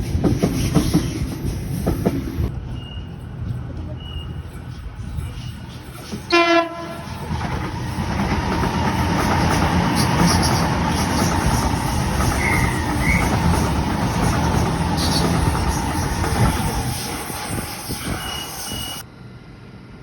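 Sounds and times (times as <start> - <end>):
train wheels rumbling on track: 0.0 - 20.0
train horn blast: 6.3 - 7.3.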